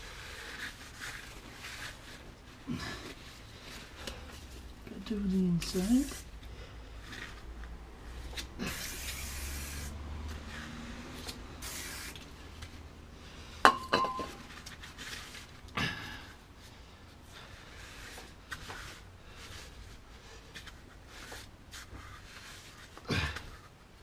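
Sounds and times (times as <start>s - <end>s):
towel rubbing on brake disc: 7.0s - 12.6s.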